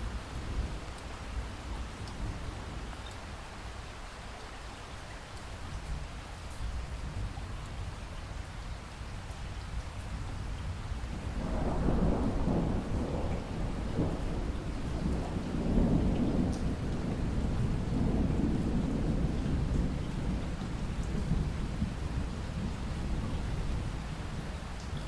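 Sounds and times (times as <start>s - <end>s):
steady rain: 0.0s - 25.0s
rolling thunder: 11.2s - 25.0s.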